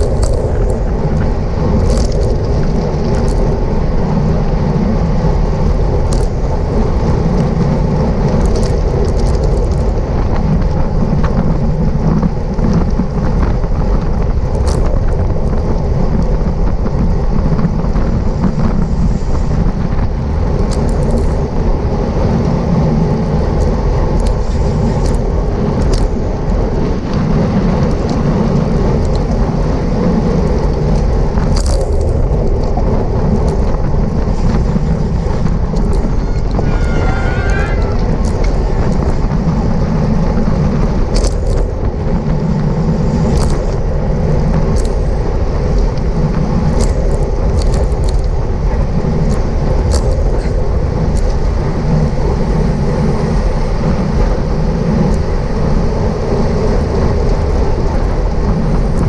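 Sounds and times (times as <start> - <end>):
sharp clicks and rattles: 0.0 - 3.6, 7.4 - 11.4, 30.2 - 42.4
road noise: 0.0 - 59.0
wind rumbling over microphone: 0.0 - 59.0.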